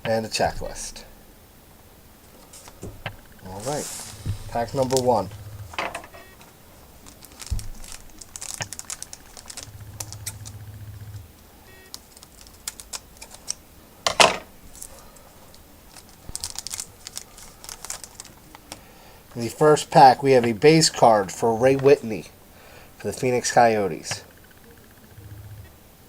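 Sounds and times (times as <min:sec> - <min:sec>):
cards clicking and rustling: 0:02.3 - 0:11.3, 0:11.9 - 0:19.6
wrapper crinkling and tearing: 0:07.0 - 0:10.4, 0:11.9 - 0:13.6, 0:15.9 - 0:18.8.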